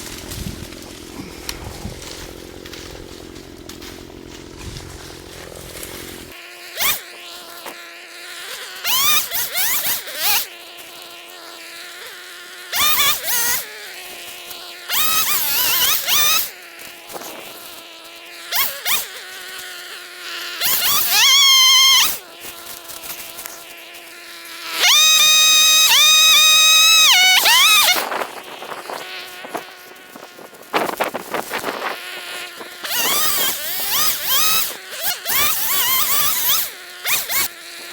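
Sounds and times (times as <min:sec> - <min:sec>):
chainsaw idling and revving: 0:00.0 - 0:07.1, 0:14.4 - 0:16.5, 0:24.8 - 0:28.2, 0:32.8 - 0:37.9.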